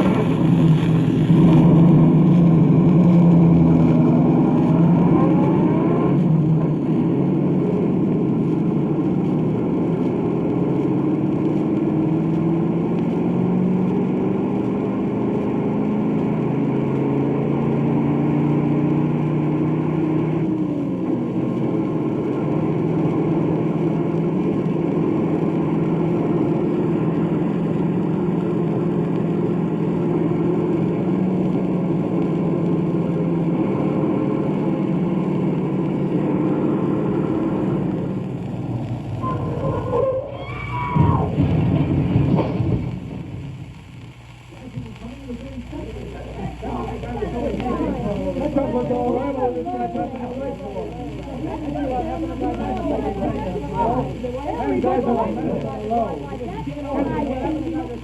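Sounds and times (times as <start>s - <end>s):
car engine revving: 0.0s - 56.4s
record surface noise: 0.0s - 58.0s.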